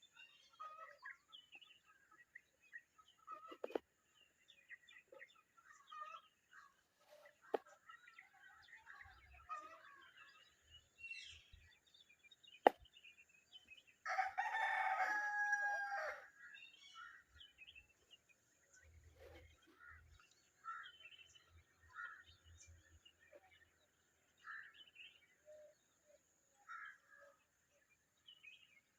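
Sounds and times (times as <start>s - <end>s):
rooster crowing: 14.1s - 16.2s.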